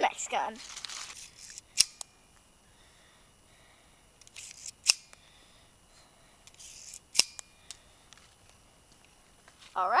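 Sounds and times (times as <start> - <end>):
rustle: 0.1 - 2.5, 6.0 - 10.0
sharp click: 4.2 - 5.2, 6.5 - 7.8.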